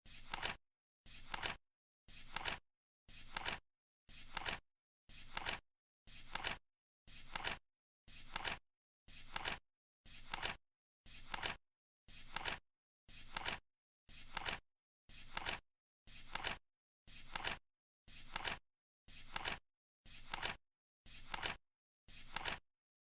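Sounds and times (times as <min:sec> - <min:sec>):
flip clock card flapping: 0:00.2 - 0:00.6, 0:01.2 - 0:01.6, 0:02.3 - 0:02.6, 0:03.3 - 0:03.6, 0:04.3 - 0:04.6, 0:05.2 - 0:05.6, 0:06.3 - 0:06.6, 0:07.3 - 0:07.6, 0:08.3 - 0:08.6, 0:09.3 - 0:09.6, 0:10.2 - 0:10.6, 0:11.3 - 0:11.6, 0:12.3 - 0:12.6, 0:13.3 - 0:13.6, 0:14.3 - 0:14.6, 0:15.3 - 0:15.6, 0:16.3 - 0:16.6, 0:19.3 - 0:19.6, 0:20.2 - 0:20.6, 0:21.3 - 0:21.6, 0:22.3 - 0:22.6.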